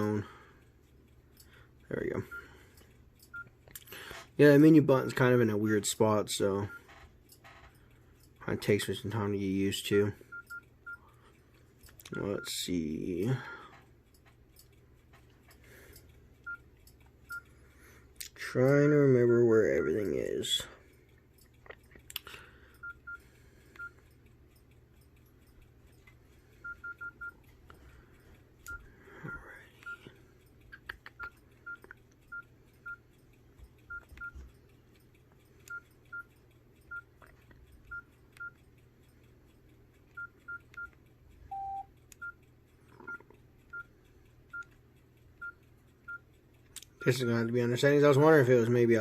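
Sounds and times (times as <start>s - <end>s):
phone keypad beeps: 10.3s - 11.0s, 16.4s - 16.6s, 22.8s - 23.2s, 26.6s - 27.4s, 33.9s - 34.4s, 35.7s - 36.3s, 36.9s - 37.1s, 37.9s - 38.6s, 40.2s - 40.9s, 41.5s - 42.4s, 43.0s - 43.9s, 44.5s - 44.7s, 45.4s - 46.2s
low long beep: 41.5s - 41.9s.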